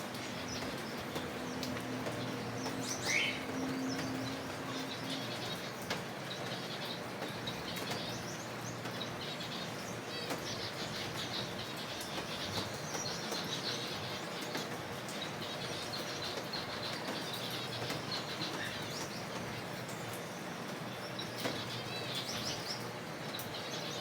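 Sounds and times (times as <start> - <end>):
finches chirping: 0.4 - 5.6.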